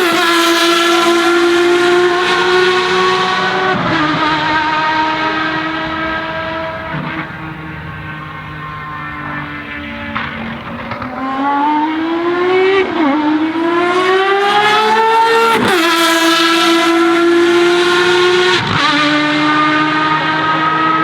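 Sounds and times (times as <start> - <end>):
car engine accelerating hard: 0.0 - 21.0.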